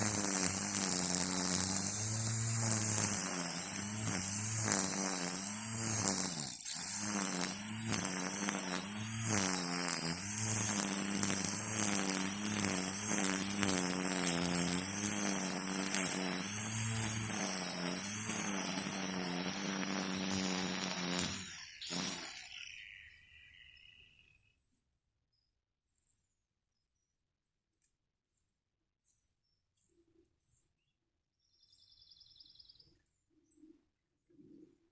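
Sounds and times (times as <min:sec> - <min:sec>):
string trimmer running: 0:00.0 - 0:22.6.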